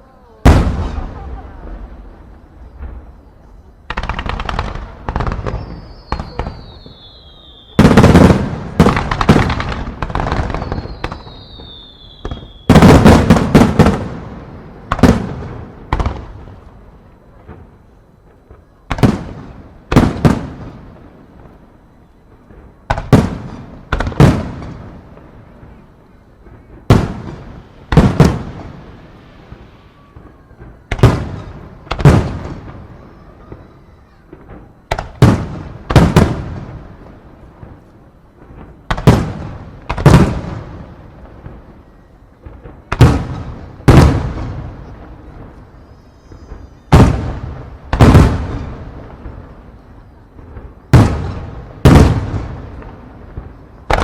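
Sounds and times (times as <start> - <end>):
high whistle falling in pitch: 5.5 - 7.8, 10.6 - 12.7, 45.6 - 46.9.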